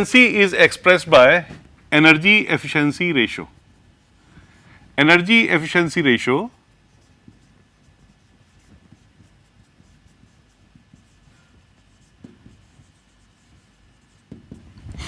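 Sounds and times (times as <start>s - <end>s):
pen scratching while writing: 6.8s - 14.8s.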